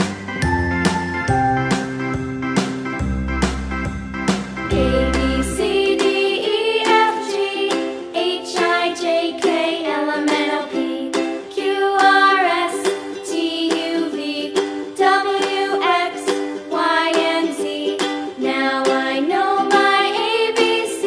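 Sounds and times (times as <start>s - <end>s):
sung melody: 0.0s - 9.9s
light tune with plucked strings: 0.0s - 21.0s.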